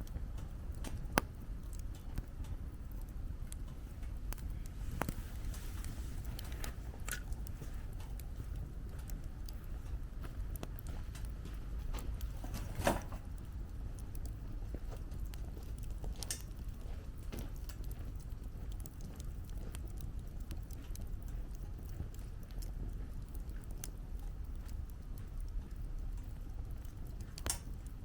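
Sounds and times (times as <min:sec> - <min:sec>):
campfire crackling and popping: 0:00.0 - 0:28.0
low wind rumble: 0:00.0 - 0:28.0.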